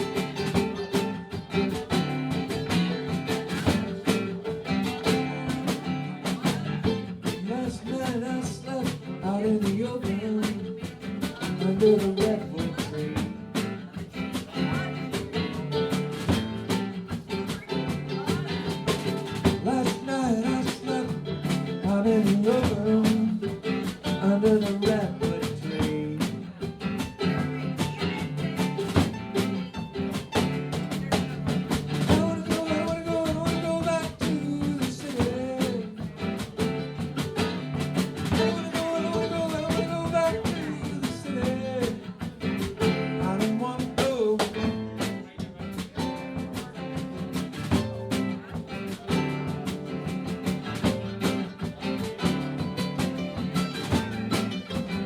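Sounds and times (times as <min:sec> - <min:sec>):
live band playing: 0:00.0 - 0:55.0.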